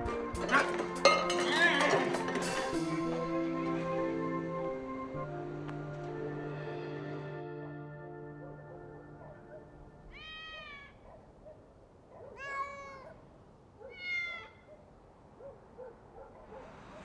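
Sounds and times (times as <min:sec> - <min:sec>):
cat meowing: 0:10.1 - 0:11.0, 0:12.3 - 0:13.2, 0:13.8 - 0:14.7.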